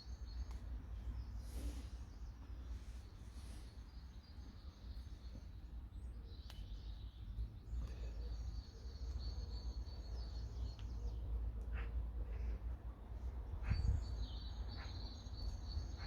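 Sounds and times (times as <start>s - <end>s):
birds chirping and singing: 13.2s - 16.0s.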